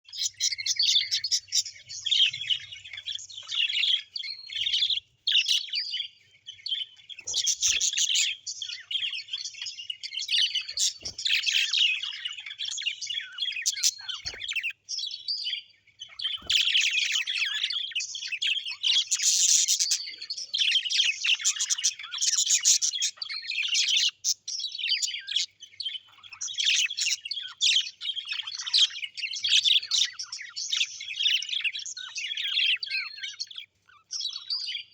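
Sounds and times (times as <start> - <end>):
small birds chirping: 0.0 - 34.9.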